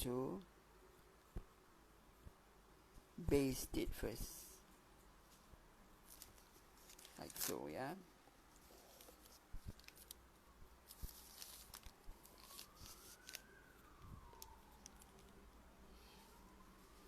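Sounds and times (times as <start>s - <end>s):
faint rising and falling tone: 10.4s - 17.0s.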